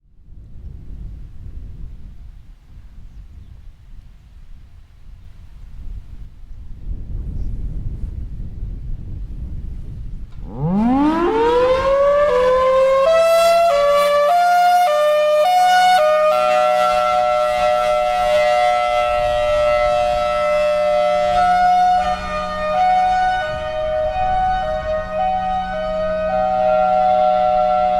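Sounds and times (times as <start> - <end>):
warning siren hi-lo signal: 10.4 - 27.9.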